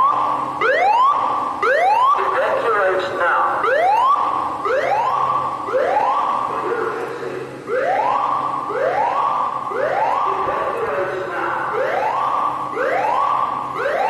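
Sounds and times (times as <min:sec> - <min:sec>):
fire alarm whoop tone: 0:07.7 - 0:10.8, 0:11.6 - 0:14.0.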